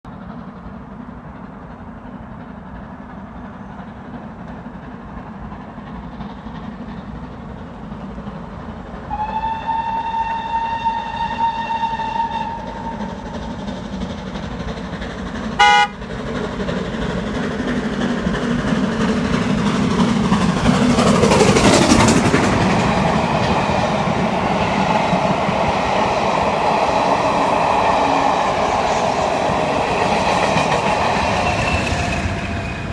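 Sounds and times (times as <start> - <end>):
steam locomotive running: 0.1 - 32.9
steam locomotive whistle: 9.1 - 13.2, 15.6 - 16.0
short loud whistle toot: 15.6 - 15.9.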